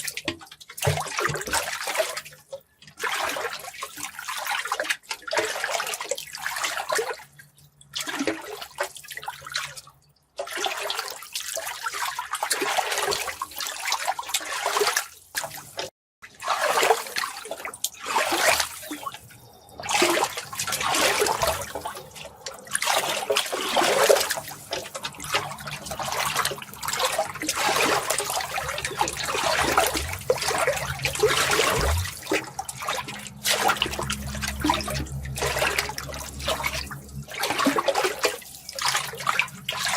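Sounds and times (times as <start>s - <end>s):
running water splashing: 10.4s - 39.9s.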